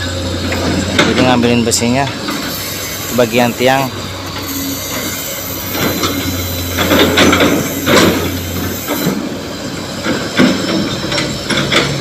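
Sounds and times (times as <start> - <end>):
angle grinder cutting steel: 2.3 - 9.2.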